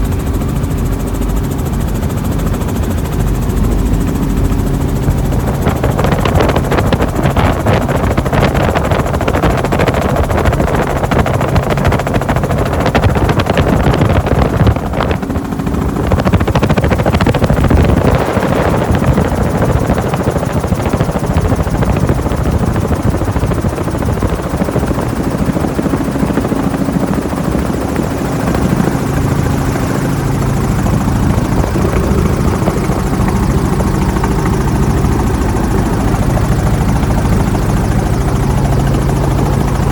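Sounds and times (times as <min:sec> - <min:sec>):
helicopter rotor and engine noise: 0:00.0 - 0:39.9.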